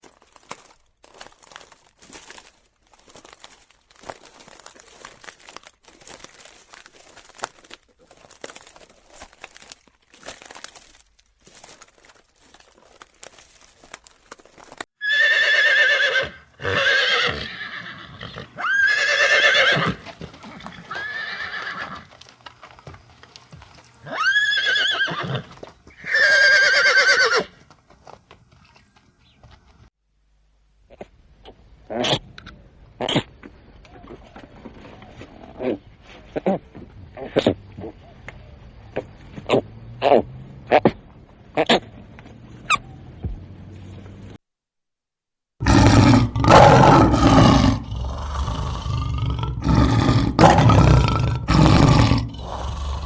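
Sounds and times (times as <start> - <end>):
horse hooves clip-clopping: 0.0 - 16.0, 19.6 - 26.0, 26.8 - 29.8
horse whinnying: 15.0 - 22.1, 24.0 - 27.6.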